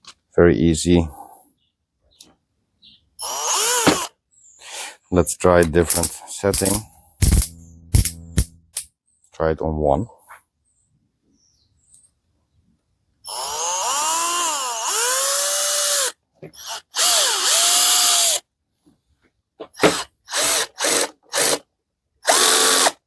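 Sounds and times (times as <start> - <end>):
cordless drill motor whining: 3.2 - 4.1, 13.2 - 18.4, 19.8 - 21.6, 22.2 - 23.0
drill trigger bursts: 3.2 - 4.1, 6.6 - 8.7, 13.3 - 18.4, 19.8 - 21.6, 22.2 - 23.0.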